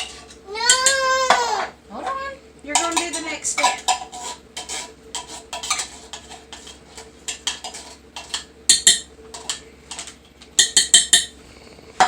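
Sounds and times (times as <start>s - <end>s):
faint steady hum: 0.0s - 12.0s
metal spoon clinking on kitchenware: 2.7s - 5.9s, 7.3s - 11.3s.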